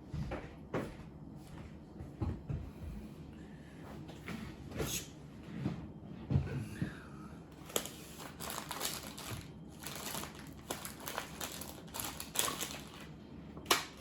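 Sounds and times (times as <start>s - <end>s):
plastic packaging crinkling: 7.6s - 14.0s.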